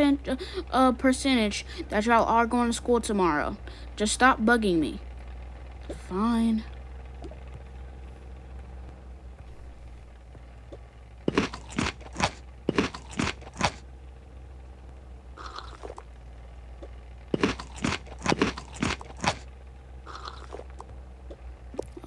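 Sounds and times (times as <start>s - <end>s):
low steady hum: 0.0s - 22.0s
sharp crunches: 10.7s - 13.8s, 15.4s - 16.1s, 16.8s - 19.5s, 20.1s - 22.0s.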